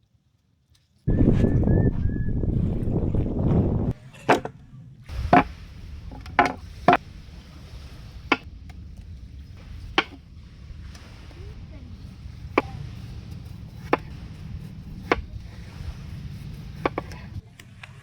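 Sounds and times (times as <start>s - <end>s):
loud rushing noise: 1.1s - 4.0s
steady low rush: 1.1s - 4.1s.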